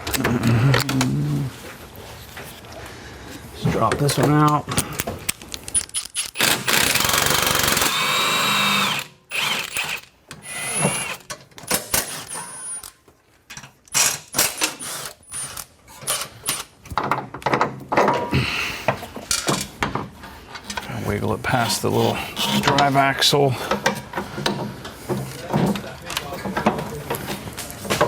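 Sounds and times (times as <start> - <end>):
power tool spinning and whining: 6.2 - 12.9, 20.9 - 23.2.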